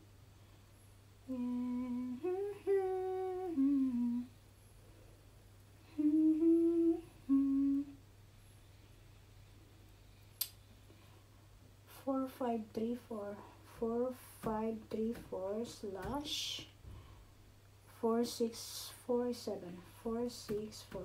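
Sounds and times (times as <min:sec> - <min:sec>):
woman humming: 0:01.2 - 0:04.4, 0:05.9 - 0:08.0.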